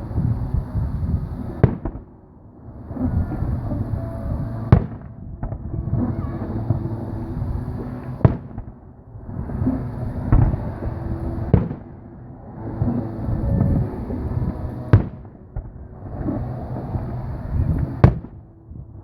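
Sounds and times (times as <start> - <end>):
low rumble and crackle: 0.0 - 19.0
fireworks bangs: 1.5 - 2.1, 2.9 - 8.8, 9.6 - 11.9, 12.8 - 18.4.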